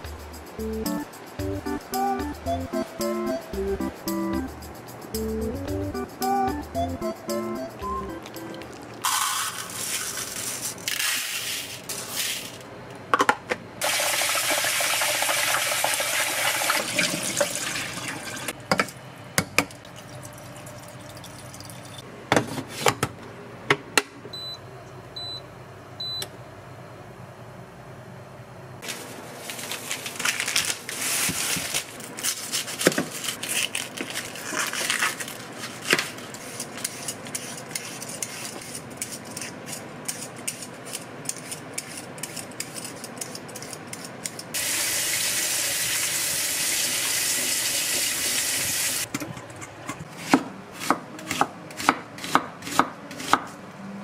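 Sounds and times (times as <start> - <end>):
electronic appliance beeps: 0.6 - 4.5, 5.2 - 8.7, 24.3 - 26.3
water running: 13.8 - 18.6, 19.9 - 22.0, 44.6 - 49.1.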